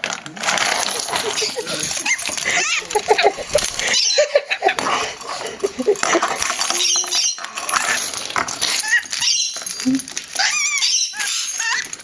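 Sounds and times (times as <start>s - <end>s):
lorikeet chattering and squawking: 1.3s - 4.6s, 6.7s - 7.6s, 8.8s - 9.6s, 10.4s - 11.9s.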